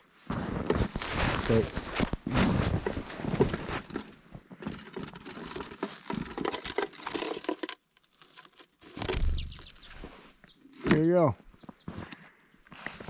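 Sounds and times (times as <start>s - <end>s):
hands rustling and clicking feeder: 0.6s - 10.6s.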